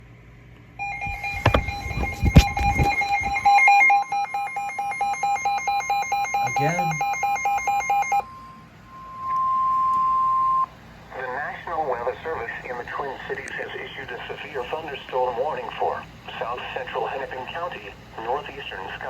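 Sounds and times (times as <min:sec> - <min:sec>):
rapid electronic alert beeping: 0:00.8 - 0:10.7
thumps and clicks: 0:01.0 - 0:03.5.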